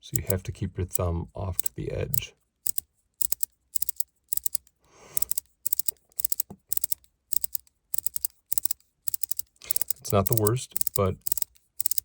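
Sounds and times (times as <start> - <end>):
magnetic ring buttons clicking: 0.1 - 4.6, 5.2 - 12.0.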